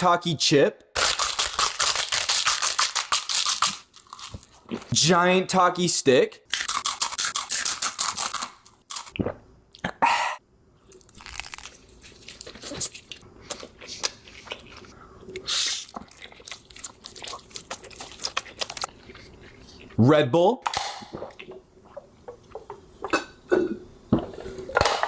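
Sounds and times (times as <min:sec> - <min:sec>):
tortilla chip crunching: 0:01.0 - 0:04.9, 0:06.5 - 0:09.2, 0:10.9 - 0:14.7, 0:15.8 - 0:19.2
chewing: 0:10.9 - 0:20.0.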